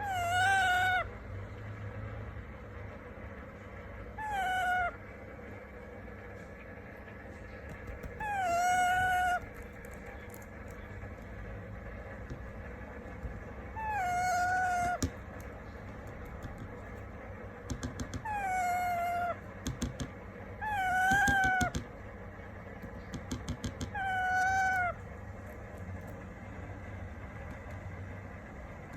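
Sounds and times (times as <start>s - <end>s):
parakeet meow-like calls: 0.0s - 1.2s, 4.1s - 5.1s, 8.0s - 10.4s, 13.7s - 15.2s, 18.0s - 20.0s, 20.6s - 21.9s, 23.6s - 25.1s.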